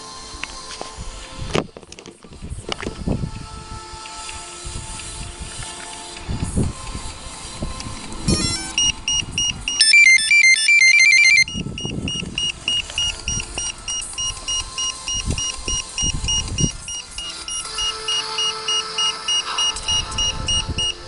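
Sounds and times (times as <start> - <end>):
short high beeps: 8.3 - 21.0
transmitter beeping tune: 8.3 - 21.0.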